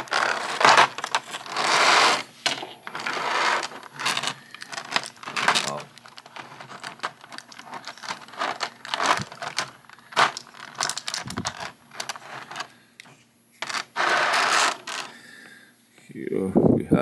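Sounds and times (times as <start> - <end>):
plastic packaging crinkling rustle: 2.9 - 12.7
plastic packaging clicks and crackles: 4.0 - 12.6.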